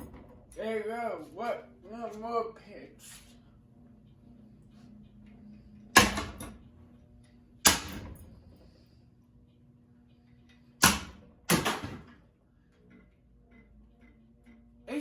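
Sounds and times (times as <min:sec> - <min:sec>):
ceiling fan being smashed: 0:06.0 - 0:06.6, 0:07.6 - 0:08.2, 0:10.8 - 0:12.2.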